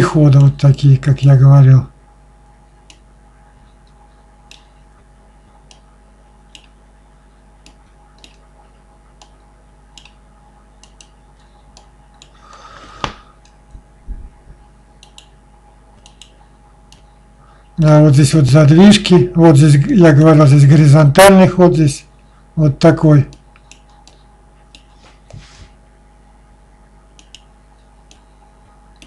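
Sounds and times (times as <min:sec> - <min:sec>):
computer mouse clicks: 0:05.7 - 0:05.9, 0:06.5 - 0:06.8, 0:07.6 - 0:08.4, 0:10.0 - 0:10.2, 0:10.8 - 0:12.4, 0:15.0 - 0:15.4, 0:16.0 - 0:17.1, 0:23.3 - 0:25.0, 0:27.2 - 0:27.5.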